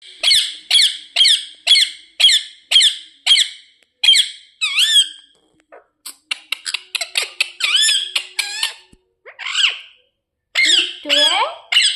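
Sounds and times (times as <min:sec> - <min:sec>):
parakeet screeching: 0:00.2 - 0:05.2, 0:06.6 - 0:10.0, 0:10.6 - 0:11.9
parakeet wavering call: 0:00.2 - 0:05.2, 0:06.6 - 0:10.0, 0:10.6 - 0:11.9
parakeet clicking chatter: 0:06.1 - 0:09.7.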